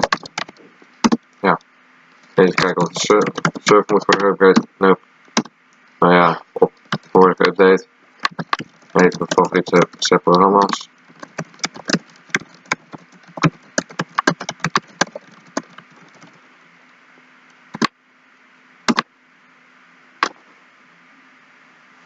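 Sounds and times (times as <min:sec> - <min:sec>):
computer keyboard typing: 0:00.0 - 0:01.2, 0:02.4 - 0:05.5, 0:06.6 - 0:07.6, 0:08.2 - 0:16.4.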